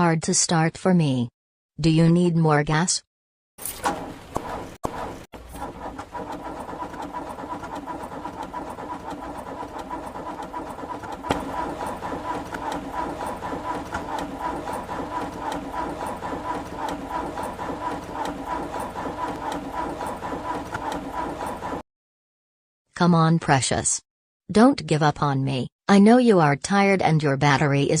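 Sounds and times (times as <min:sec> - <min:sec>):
car engine cranking: 0:03.6 - 0:21.8.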